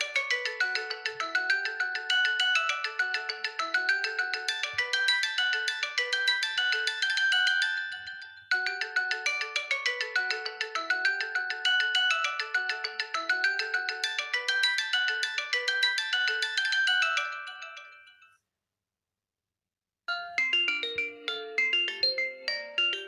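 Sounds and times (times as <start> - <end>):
phone ringtone melody: 0.0 - 18.3, 20.1 - 23.0.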